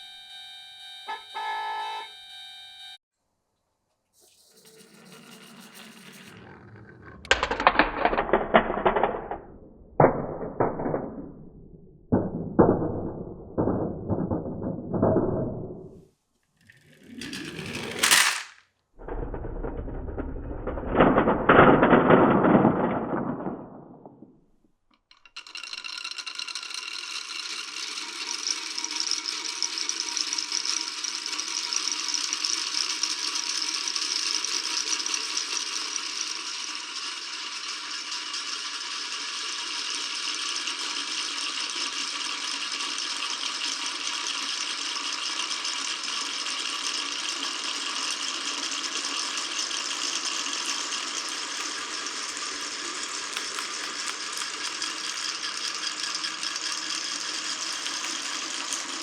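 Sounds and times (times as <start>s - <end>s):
rising whirr: 4.2s - 10.0s
steady rattle: 4.5s - 16.0s, 16.6s - 59.0s
marbles rolling down wooden run: 4.6s - 16.0s, 16.6s - 59.0s
marbles clicking on blocks: 6.1s - 15.7s, 16.6s - 24.3s, 24.9s - 59.0s.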